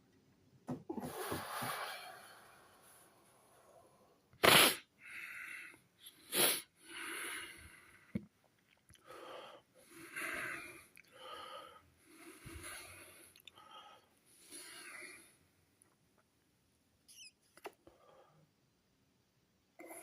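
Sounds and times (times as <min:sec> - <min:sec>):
man breathing: 0:05.0 - 0:08.2, 0:09.0 - 0:15.4.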